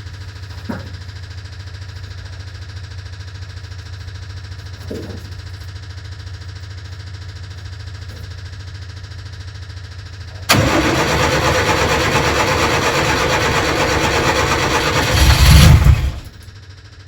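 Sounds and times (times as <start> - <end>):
car engine starting and revving: 10.5 - 16.4.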